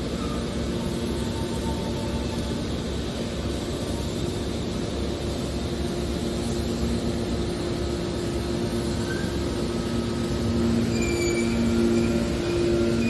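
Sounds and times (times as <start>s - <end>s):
hydraulic baler machine hum: 7.8s - 13.0s.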